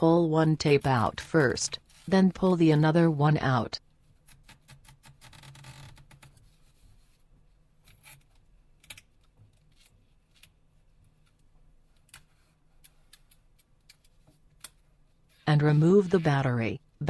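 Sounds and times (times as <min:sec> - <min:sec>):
light clicks and scratches of tools: 0:07.8 - 0:15.4.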